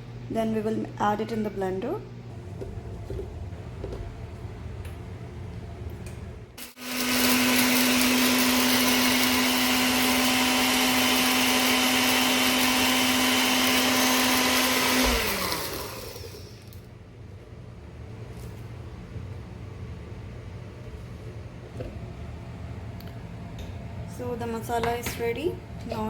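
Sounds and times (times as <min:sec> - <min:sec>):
electric blender grinding spices: 0:06.6 - 0:16.8.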